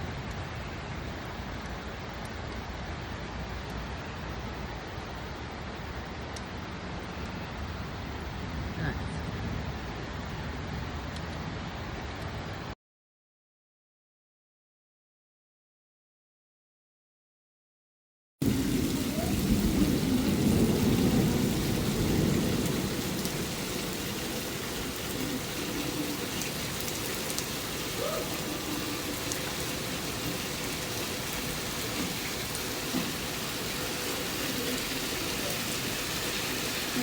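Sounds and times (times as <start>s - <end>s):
steady rain: 0.0s - 12.8s, 18.4s - 37.0s
low rumble of thunder: 18.4s - 36.0s.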